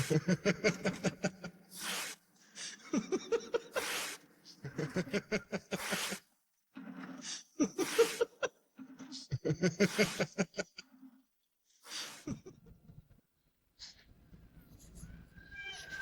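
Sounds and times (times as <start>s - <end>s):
man laughing manically: 0.0s - 1.6s, 2.8s - 4.0s, 4.6s - 6.1s, 9.3s - 10.8s.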